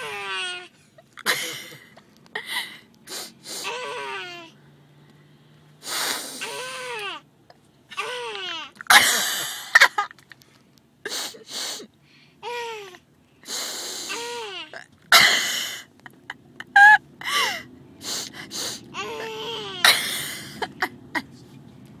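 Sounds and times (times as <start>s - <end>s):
person sniffling: 2.4s - 3.7s, 5.8s - 6.6s, 11.1s - 11.9s, 13.4s - 14.2s, 17.3s - 18.9s.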